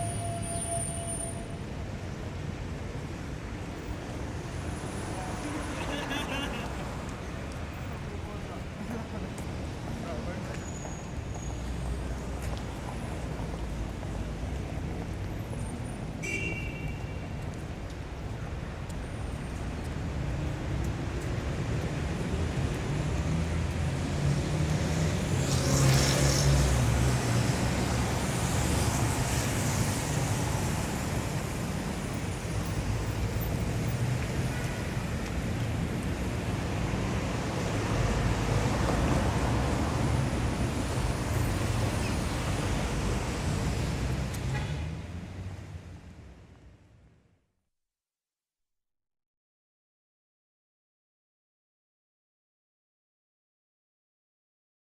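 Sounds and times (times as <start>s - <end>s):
brief high squeal: 0.0s - 1.7s
traffic rumble: 0.0s - 47.2s.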